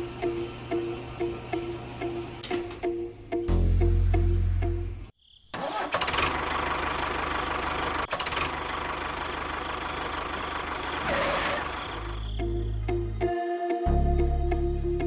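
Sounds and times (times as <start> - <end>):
loud low drone: 3.5 - 5.1.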